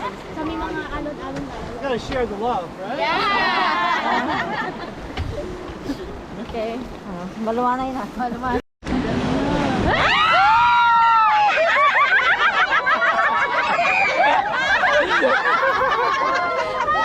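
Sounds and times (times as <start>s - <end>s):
people shrieking and laughing: 3.0s - 4.9s, 9.8s - 17.0s.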